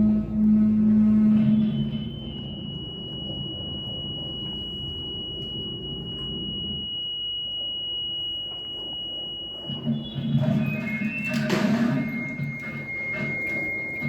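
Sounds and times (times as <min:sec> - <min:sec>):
low hum: 0:00.0 - 0:08.0.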